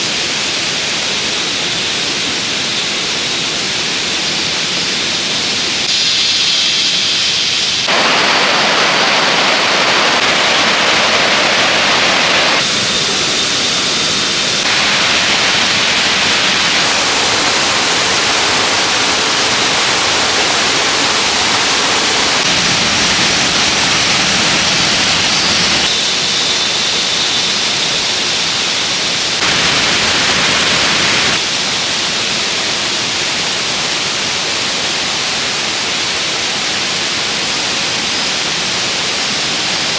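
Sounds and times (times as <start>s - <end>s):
stream water rushing: 7.9s - 25.9s, 29.3s - 39.9s.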